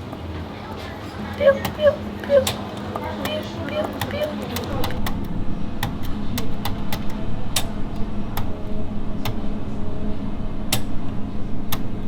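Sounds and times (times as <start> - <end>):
low hum and rumble: 4.6 - 12.0.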